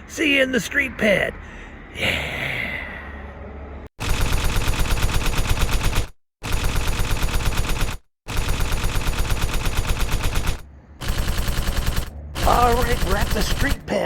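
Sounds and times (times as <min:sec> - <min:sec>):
machine gun fire: 0:04.0 - 0:14.0.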